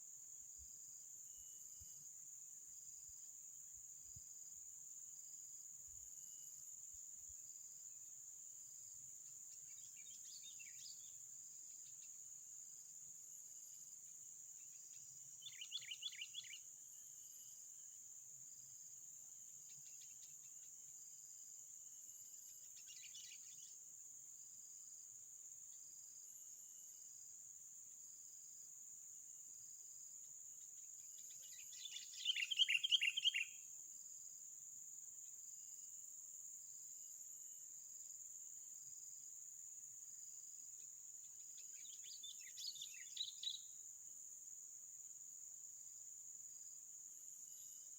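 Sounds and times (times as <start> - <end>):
high insect drone: 0.1 - 47.9
bird trilled calls: 31.8 - 33.5.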